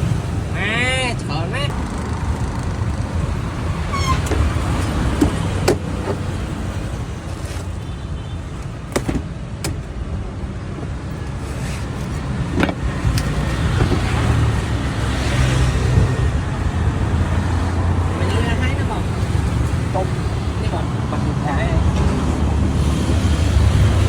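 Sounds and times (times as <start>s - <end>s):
street traffic rumble: 0.0s - 24.0s.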